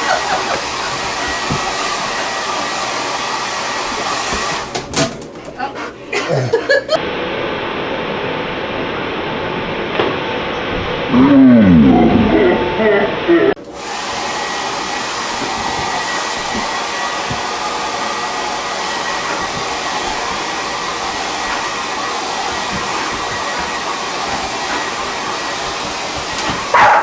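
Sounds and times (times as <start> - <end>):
hair dryer running: 0.0 - 5.0, 13.6 - 27.0.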